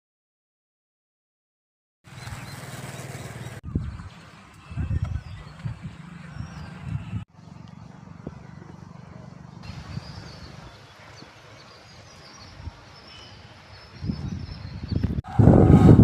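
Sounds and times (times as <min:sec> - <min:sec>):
faint bird chirps: 0:09.7 - 0:15.0
low rumble: 0:15.0 - 0:16.0.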